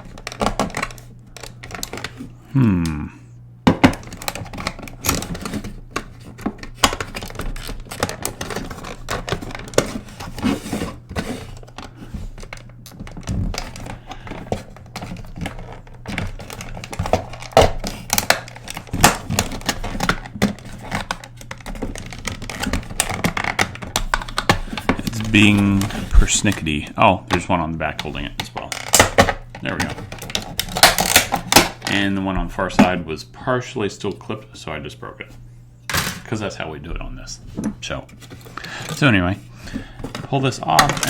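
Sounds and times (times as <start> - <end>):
plastic clips clicking and scraping: 0.0 - 2.2, 28.1 - 32.0.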